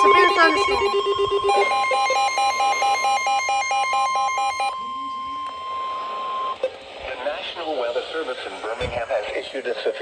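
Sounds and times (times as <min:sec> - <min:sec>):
rapid electronic beeping: 0:00.0 - 0:06.6
steady high alert tone: 0:00.0 - 0:06.7.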